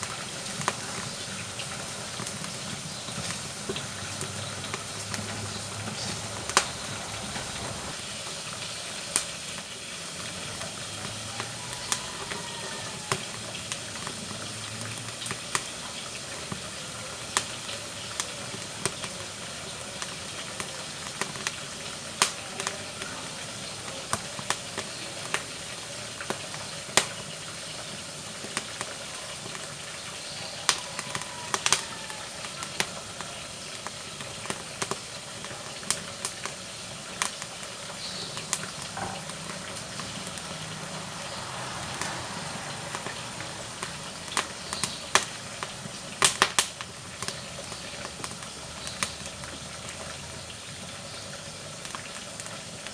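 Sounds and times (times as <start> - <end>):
wood fire crackling and popping: 0.0 - 52.9.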